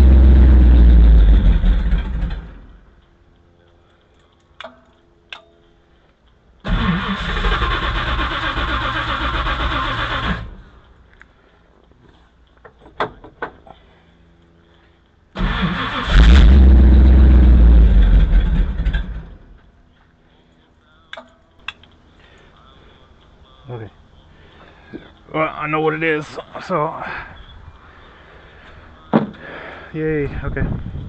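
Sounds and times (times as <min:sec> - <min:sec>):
car engine cranking on starter: 0:06.6 - 0:10.8, 0:15.4 - 0:19.6.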